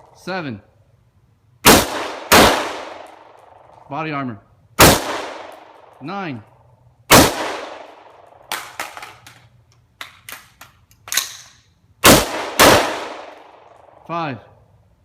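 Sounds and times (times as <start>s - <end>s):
rifle shots: 1.6s - 3.7s, 4.8s - 6.0s, 7.1s - 9.2s, 12.0s - 14.0s.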